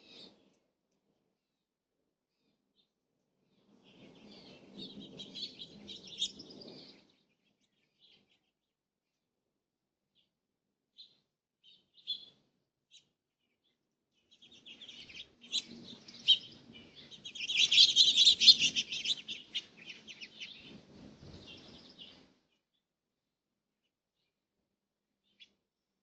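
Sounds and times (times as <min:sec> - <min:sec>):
birds chirping: 0:14.3 - 0:20.7.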